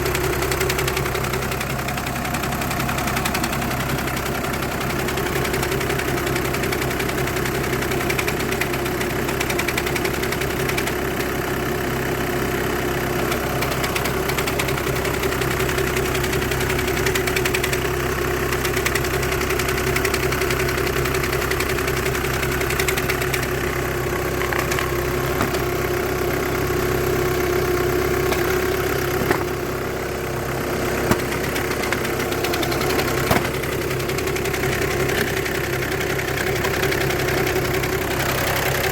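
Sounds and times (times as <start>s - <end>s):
car engine idling with whine: 0.0s - 38.9s
clicks: 31.1s - 33.8s.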